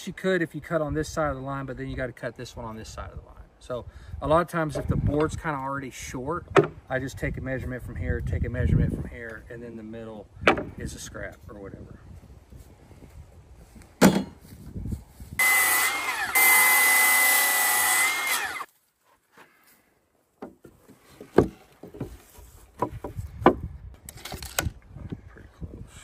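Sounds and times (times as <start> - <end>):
lumber knocking: 10.4 - 10.8, 20.4 - 22.2, 22.8 - 23.7
electric saw cutting wood: 15.4 - 18.7.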